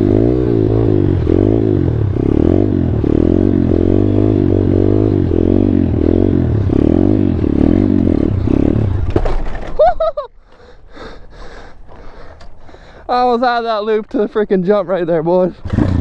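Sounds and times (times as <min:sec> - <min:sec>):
small motorbike engine revving: 0:00.0 - 0:09.2, 0:15.6 - 0:16.0.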